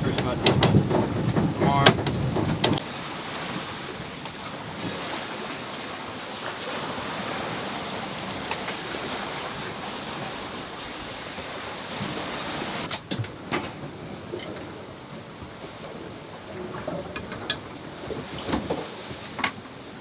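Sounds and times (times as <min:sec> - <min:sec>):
sharp knocks: 0:00.0 - 0:02.8
wind and sea water rushing: 0:00.0 - 0:20.0.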